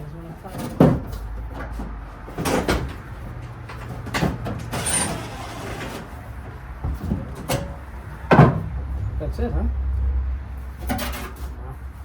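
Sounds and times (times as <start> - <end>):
knocks of car parts handled: 0.6 - 3.1, 6.8 - 8.9.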